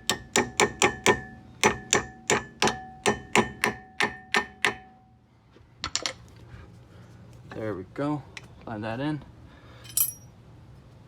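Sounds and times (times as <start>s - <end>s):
hammer striking metal pin: 0.0s - 5.0s
light metal clinks: 9.8s - 10.4s.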